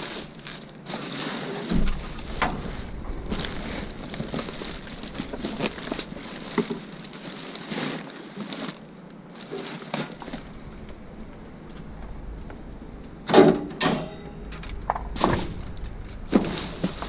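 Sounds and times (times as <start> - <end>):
plastic bags rustling: 0.0 - 13.7, 14.4 - 17.0.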